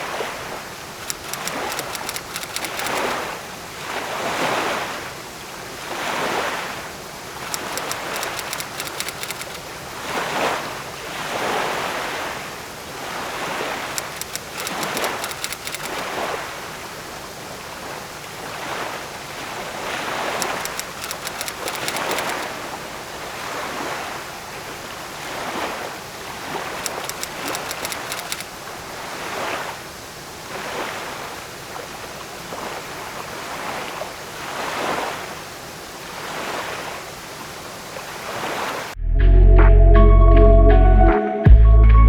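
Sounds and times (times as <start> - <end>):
rushing water: 0.0 - 39.0
rapid faint high ticks: 1.0 - 3.3, 7.4 - 9.9, 13.8 - 16.3, 20.2 - 22.7, 26.8 - 28.6.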